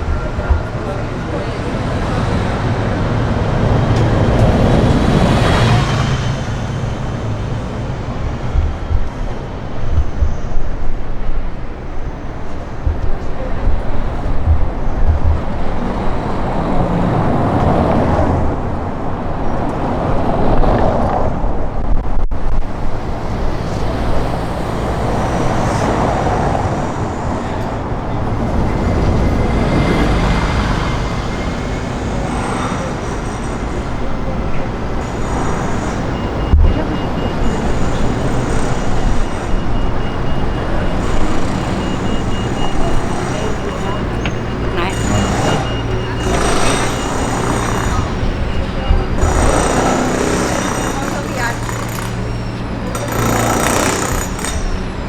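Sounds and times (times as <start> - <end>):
scattered voices: 0.0 - 21.5, 22.6 - 55.0
wind rumbling on microphone: 0.0 - 31.8
road traffic passing: 0.0 - 55.0.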